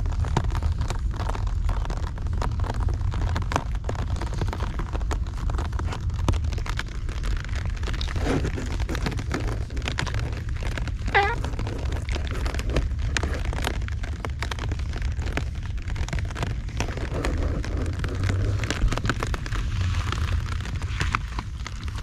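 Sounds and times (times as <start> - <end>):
heavy rain pattering: 0.0 - 22.0
cat meowing: 11.1 - 11.5.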